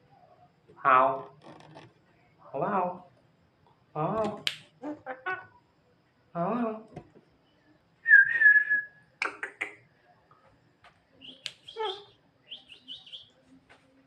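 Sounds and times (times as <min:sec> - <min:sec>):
bird whistle: 0:08.0 - 0:09.0, 0:11.2 - 0:13.3
sharp bird clicks: 0:09.2 - 0:09.8, 0:11.2 - 0:11.8
high chirping bird calls: 0:11.2 - 0:13.4.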